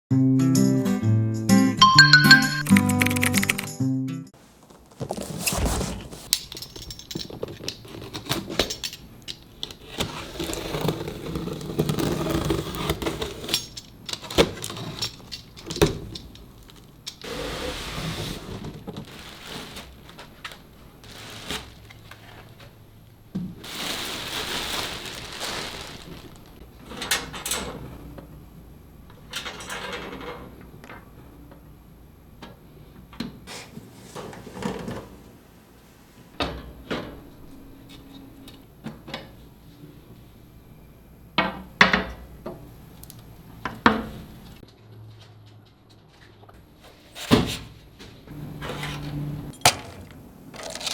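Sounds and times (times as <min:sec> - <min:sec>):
packaging rustling and sliding: 0:04.4 - 0:06.6, 0:16.6 - 0:22.6, 0:23.6 - 0:26.6, 0:49.7 - 0:50.9.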